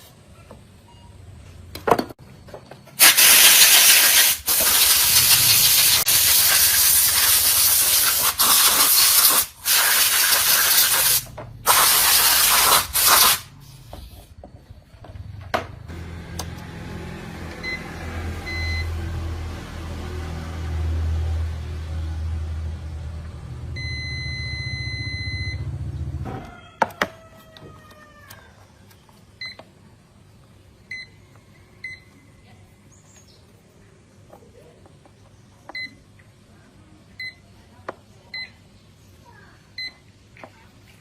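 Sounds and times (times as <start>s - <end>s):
short electronic beeps: 23.8s - 25.7s
long electronic beep: 23.8s - 25.8s.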